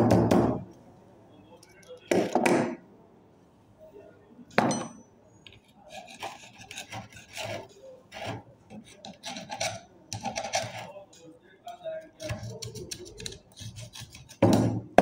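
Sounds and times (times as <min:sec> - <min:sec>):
rust being scraped off metal: 0:05.8 - 0:10.9.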